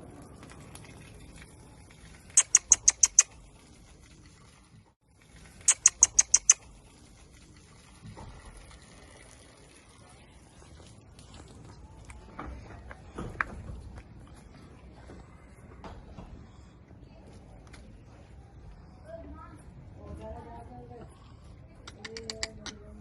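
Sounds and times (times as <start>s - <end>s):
small animal high-pitched chirps: 2.4s - 3.3s, 5.7s - 6.6s.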